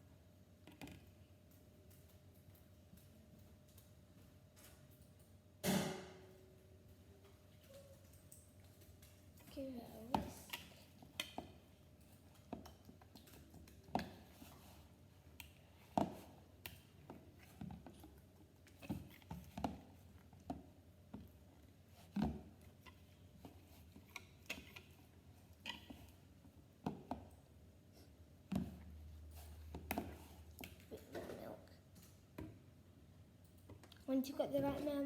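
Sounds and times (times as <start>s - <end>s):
whisk stirring batter in a jug: 28.5s - 31.2s.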